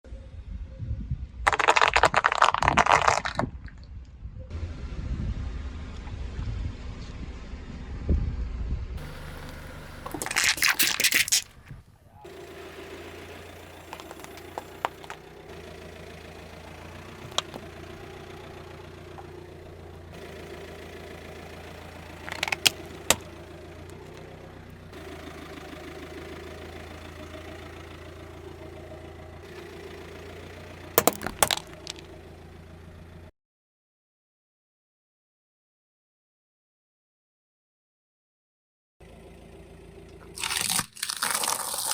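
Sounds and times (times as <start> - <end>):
car engine running: 1.4 - 3.7, 4.3 - 33.3, 39.0 - 41.3
objects cracking under a tyre: 1.5 - 3.9, 9.4 - 11.8, 13.4 - 15.6, 16.4 - 18.4, 21.7 - 24.4, 30.9 - 32.2, 40.2 - 41.9.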